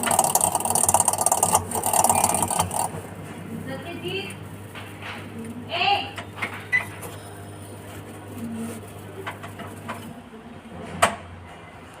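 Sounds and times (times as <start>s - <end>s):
washing machine humming: 0.0s - 4.8s.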